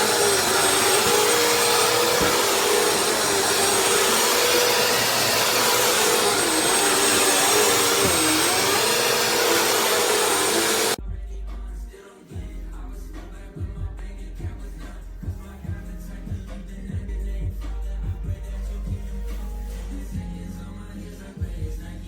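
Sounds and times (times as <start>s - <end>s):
vacuum cleaner running: 0.0s - 11.0s.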